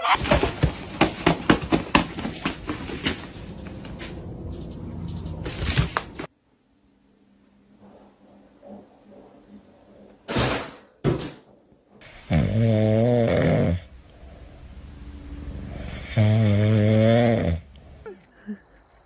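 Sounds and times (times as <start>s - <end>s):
loud snoring: 12.0s - 13.9s, 15.7s - 17.7s.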